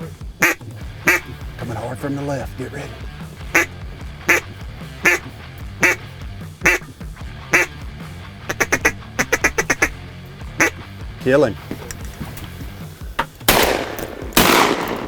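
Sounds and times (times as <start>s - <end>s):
duck call quacks: 0.4s - 1.4s, 3.5s - 7.9s, 8.5s - 10.0s, 10.6s - 10.9s.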